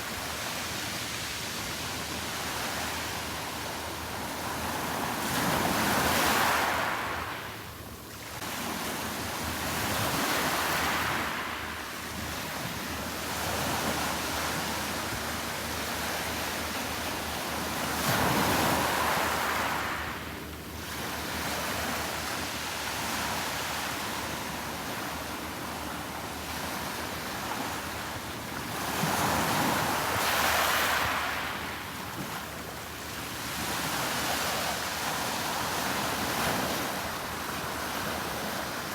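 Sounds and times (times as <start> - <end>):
sea waves breaking: 25.9 - 38.9.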